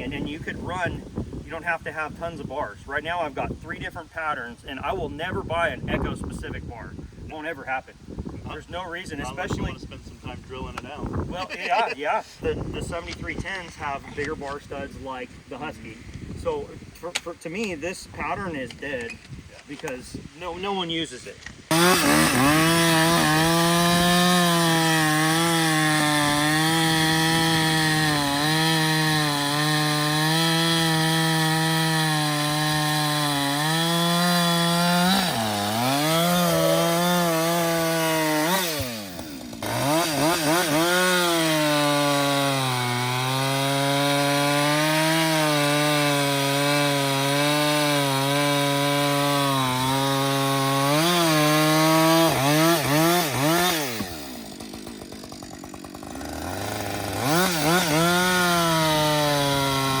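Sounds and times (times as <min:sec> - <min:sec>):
chainsaw cutting wood: 0:21.0 - 1:00.0.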